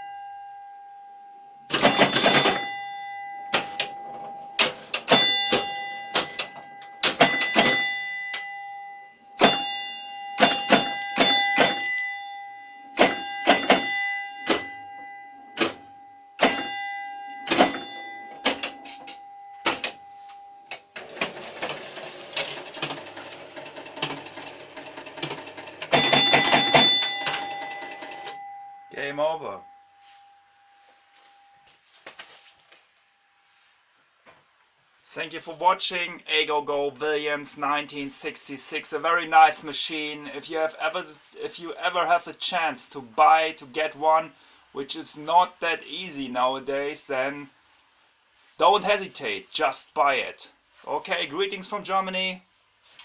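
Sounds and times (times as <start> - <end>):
pinball bell ringing: 0.0 - 0.7, 1.7 - 31.6
pinball flippers and relays clacking: 1.7 - 2.7, 3.5 - 3.9, 4.6 - 8.4, 10.4 - 11.9, 13.0 - 14.8, 15.6 - 15.8, 16.4 - 16.7, 17.4 - 20.0, 21.0 - 28.4.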